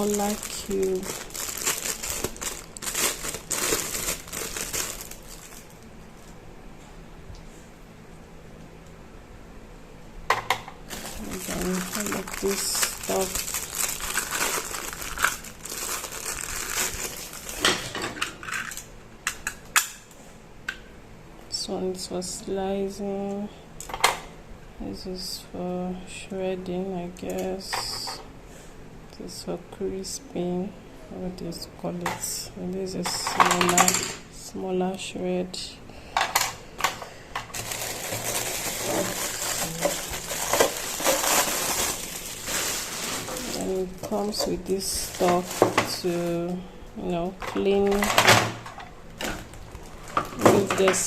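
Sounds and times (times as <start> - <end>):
plastic parts rustling and knocking: 0.0 - 5.7, 10.3 - 19.6, 36.2 - 46.1
packaging crinkling: 0.0 - 5.9, 10.9 - 18.9, 37.5 - 46.3, 49.2 - 50.4.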